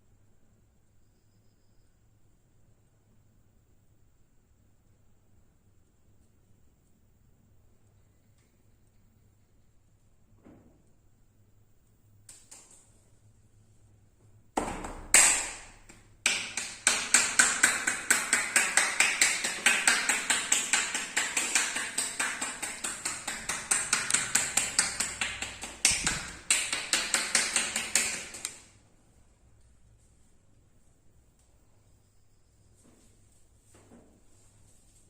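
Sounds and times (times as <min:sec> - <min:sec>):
hands slapping body in massage: 0:12.3 - 0:12.8, 0:14.6 - 0:28.7.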